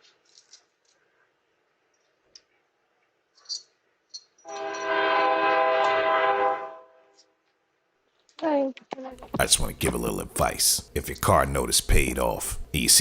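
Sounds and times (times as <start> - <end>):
horn blowing long chord: 4.5 - 7.1.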